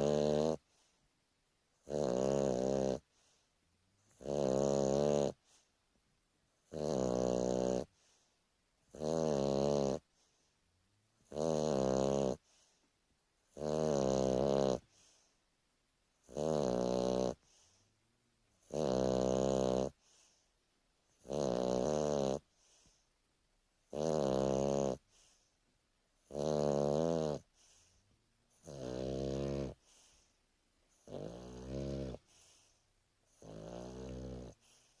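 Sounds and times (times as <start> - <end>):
dog snoring: 0.0 - 0.9, 1.7 - 3.4, 4.0 - 5.7, 6.6 - 10.5, 11.2 - 12.8, 13.4 - 15.3, 16.1 - 17.9, 18.5 - 20.4, 21.1 - 23.0, 23.8 - 25.5, 26.2 - 35.0.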